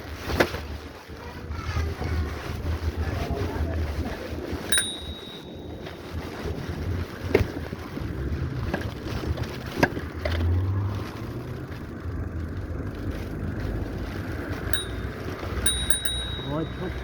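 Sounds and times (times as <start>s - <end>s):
wind buffeting the microphone: 0.0s - 11.3s
low rumble of bicycle tyres: 0.0s - 17.0s.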